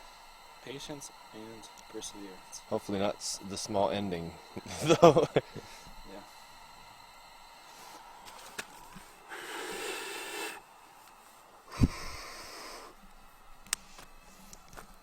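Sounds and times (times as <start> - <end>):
breathy rushes of air: 9.2 - 10.6, 11.7 - 13.0.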